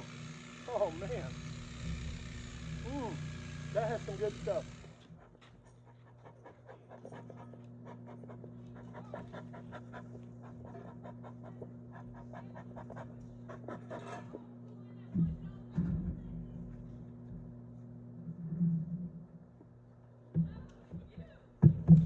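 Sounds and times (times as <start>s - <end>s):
steady low hum: 0.0s - 22.0s
rapid panting breaths: 4.0s - 14.4s.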